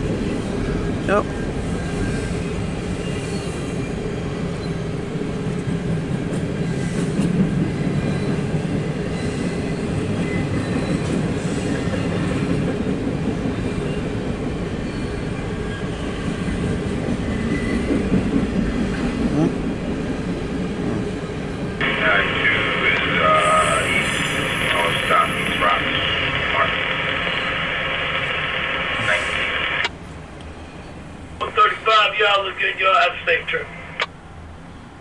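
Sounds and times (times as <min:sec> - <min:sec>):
railroad cars rumbling by: 0:00.0 - 0:35.0
faint high wheel squeal: 0:01.8 - 0:04.0, 0:08.0 - 0:12.4, 0:14.8 - 0:16.4, 0:17.2 - 0:17.9.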